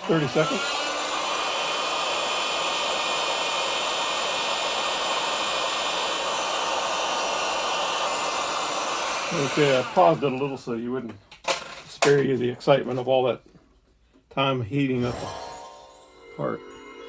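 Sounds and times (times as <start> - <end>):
heat gun blowing: 0.0 - 10.4.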